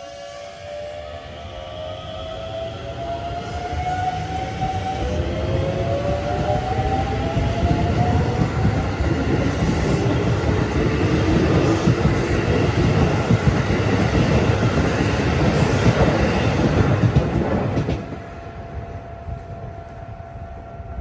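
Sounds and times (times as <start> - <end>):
electric train rumbling past: 0.0 - 21.0.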